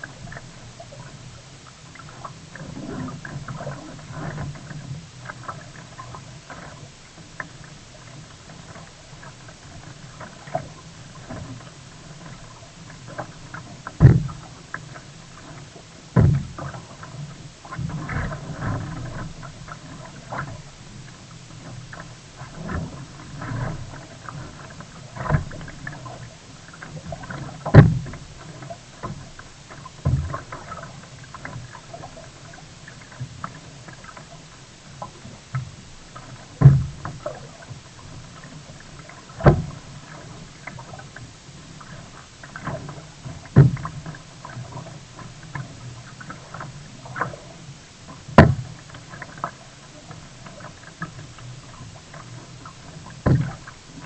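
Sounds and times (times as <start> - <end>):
kayak thuds and knocks: 13.1 - 20.6, 21.6 - 34.3, 35.0 - 54.0.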